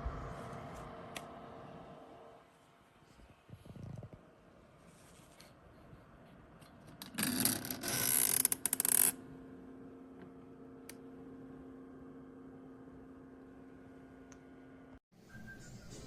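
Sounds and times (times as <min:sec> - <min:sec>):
mini fridge humming: 0:06.0 - 0:15.0.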